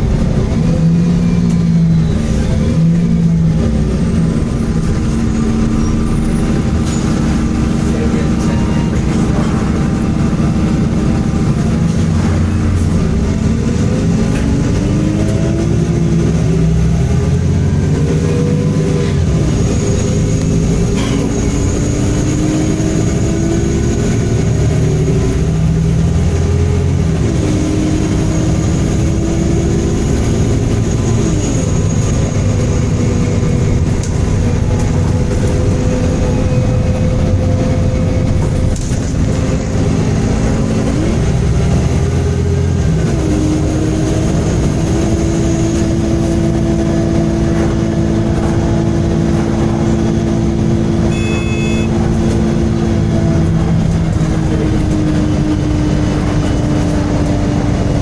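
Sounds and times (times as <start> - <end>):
bus engine accelerating: 0.0 - 58.0.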